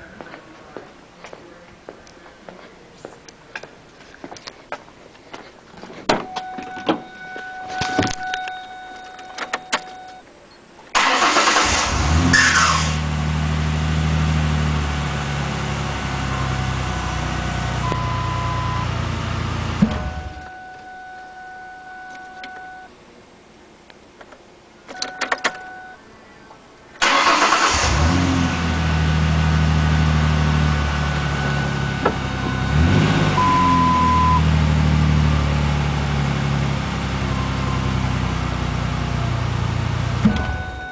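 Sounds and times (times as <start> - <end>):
truck engine starting and running: 10.9 - 20.6, 27.0 - 40.9.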